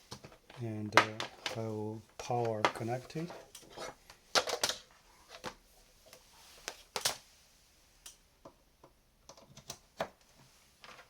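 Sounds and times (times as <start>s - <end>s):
clicks and knocks of handling: 0.1s - 7.2s.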